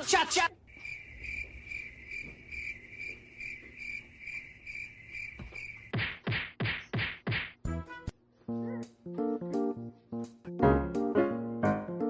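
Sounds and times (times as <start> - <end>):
cricket chirping: 0.5 - 6.0.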